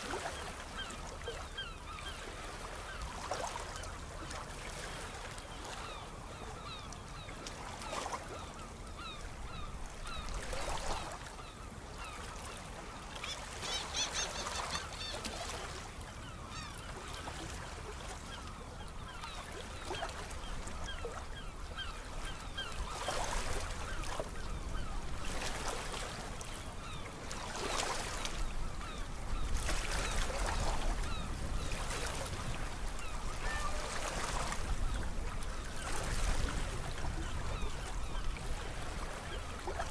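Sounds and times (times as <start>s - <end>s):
birds calling: 5.6s - 17.5s
sea waves breaking: 9.0s - 18.4s, 19.0s - 39.9s.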